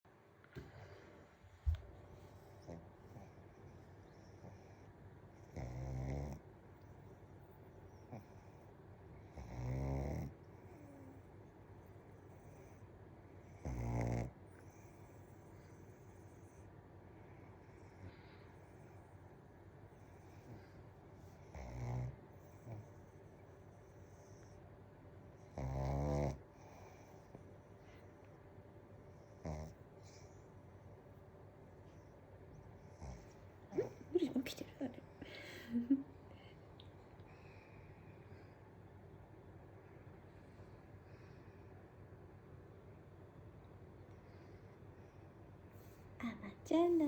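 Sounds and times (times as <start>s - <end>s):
dog snoring: 4.2s - 6.5s, 7.9s - 11.3s, 13.4s - 16.7s, 19.9s - 24.6s, 25.4s - 27.4s, 29.2s - 30.4s, 32.9s - 34.0s.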